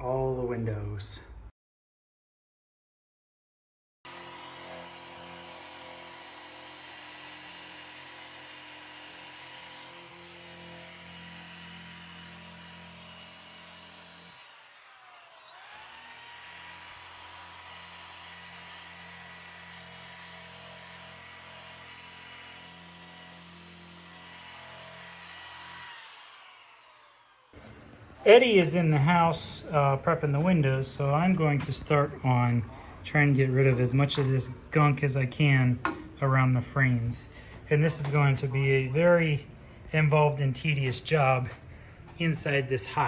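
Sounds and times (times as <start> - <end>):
power tool motor whining: 4.1 - 28.2.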